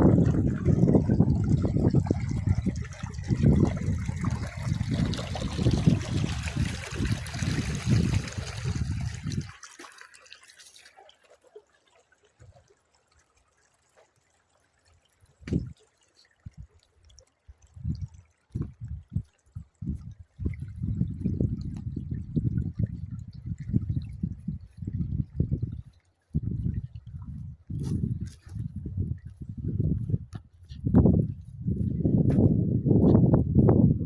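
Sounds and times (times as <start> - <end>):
water trickling and splashing: 0.0 - 32.4.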